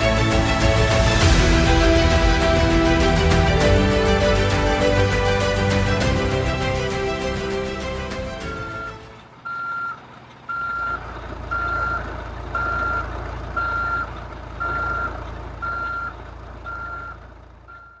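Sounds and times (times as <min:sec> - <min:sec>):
low engine rumble: 0:00.0 - 0:18.0
truck reversing alarm beeps: 0:08.4 - 0:18.0.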